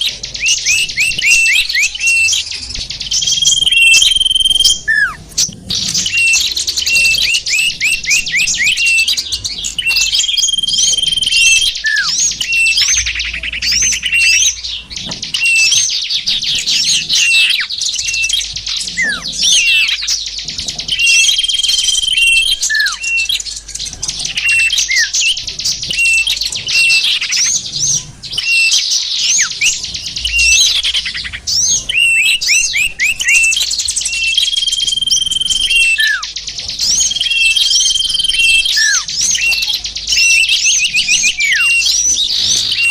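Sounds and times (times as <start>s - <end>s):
songbirds chirping and twittering: 0.0s - 42.9s
steady whistle: 0.4s - 5.2s, 6.0s - 14.6s, 21.0s - 23.4s, 31.6s - 36.3s, 36.9s - 42.9s.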